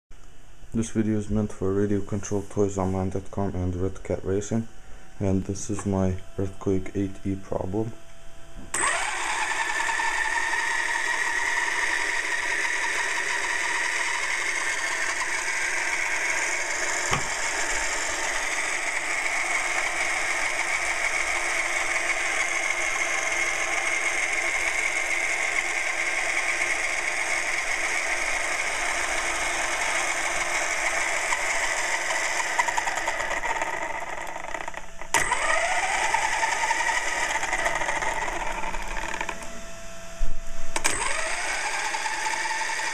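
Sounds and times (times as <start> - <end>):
electric motor whining: 8.7 - 42.9.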